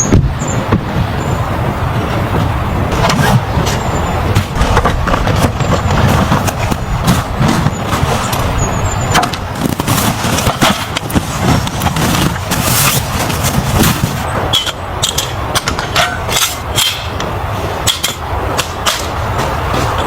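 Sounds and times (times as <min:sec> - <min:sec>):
car driving rumble: 0:00.0 - 0:20.0
knocks and crunches: 0:09.2 - 0:14.3.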